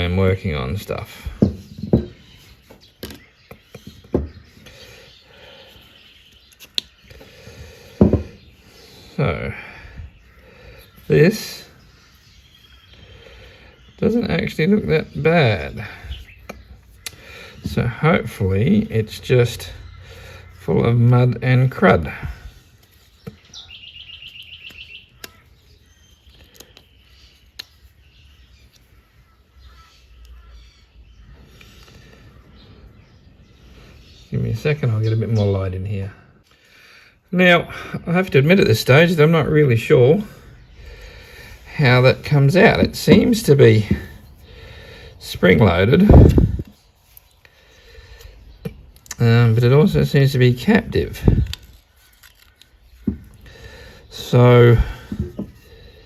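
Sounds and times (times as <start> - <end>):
bird trill: 1.2 - 22.5, 23.2 - 35.7.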